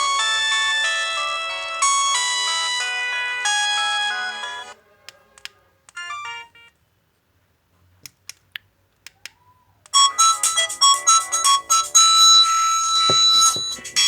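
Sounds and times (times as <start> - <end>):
phone alarm melody: 0.0 - 4.8, 10.0 - 14.0
electronic notes: 10.0 - 14.0.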